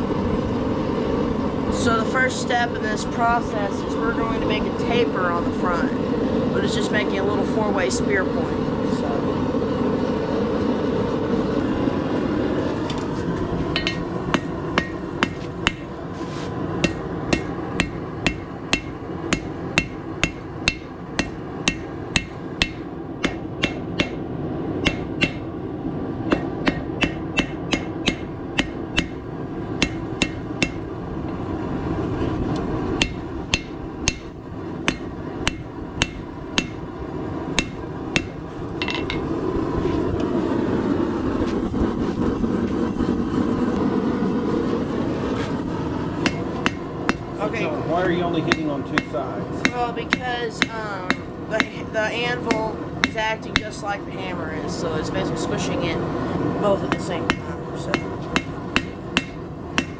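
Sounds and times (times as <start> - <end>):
steady background roar: 0.0 - 59.9
hammer striking steel on anvil: 13.8 - 16.0, 16.8 - 24.2, 24.8 - 25.5, 26.3 - 29.2, 29.8 - 30.9, 33.0 - 36.9, 37.6 - 39.3, 46.2 - 47.4, 48.4 - 51.8, 52.5 - 53.8, 56.9 - 59.9.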